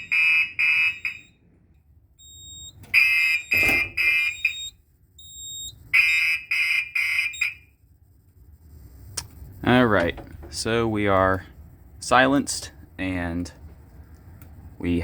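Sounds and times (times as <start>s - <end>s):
fire alarm horn blasts: 0.0s - 1.6s, 2.2s - 8.1s.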